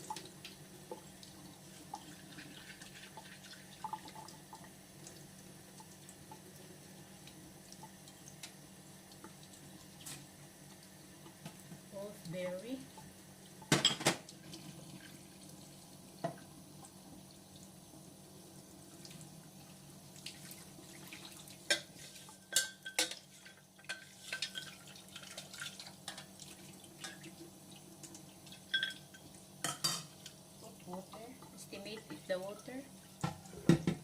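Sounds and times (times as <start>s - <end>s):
running water in sink: 0.0s - 34.0s
bowls and utensils clinking: 21.7s - 24.8s, 28.6s - 30.1s.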